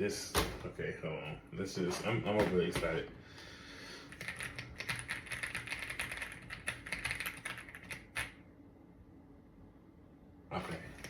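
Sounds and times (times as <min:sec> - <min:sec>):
fast keyboard typing: 0:04.1 - 0:08.4.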